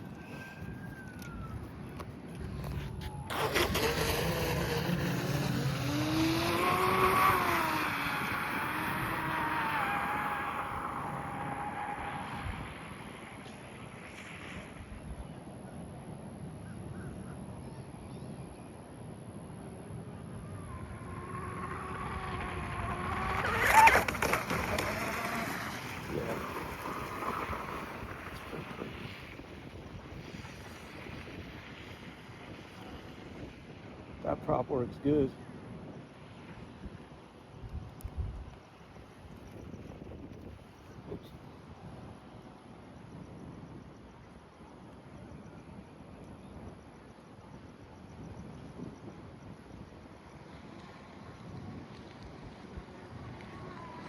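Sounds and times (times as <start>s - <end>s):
wind and water hiss: 0.0s - 54.0s
model boat motor whining: 2.0s - 13.0s, 20.6s - 29.5s.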